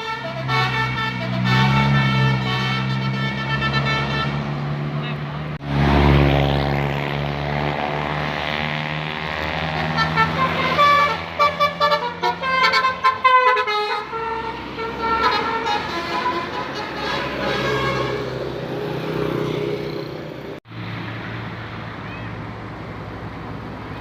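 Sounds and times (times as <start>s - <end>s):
bus horn playing a tune: 0.0s - 4.6s, 9.8s - 18.6s
bus engine running: 0.0s - 5.8s.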